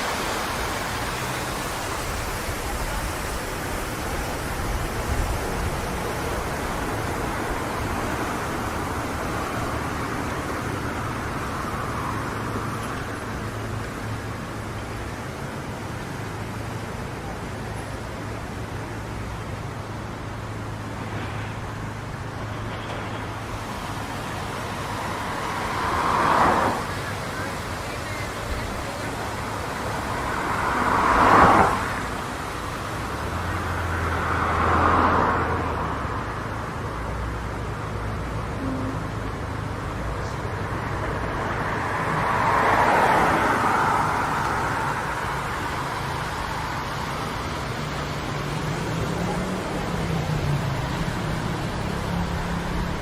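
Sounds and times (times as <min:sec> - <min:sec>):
steady road noise: 0:00.0 - 0:53.0
vehicles passing: 0:00.0 - 0:53.0
low engine drone: 0:37.9 - 0:42.4.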